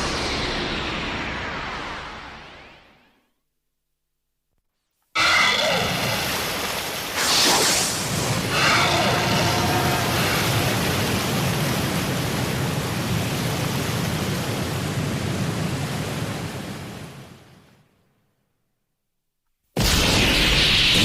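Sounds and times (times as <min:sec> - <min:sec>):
steady rushing rumbling noise: 0:00.0 - 0:03.2.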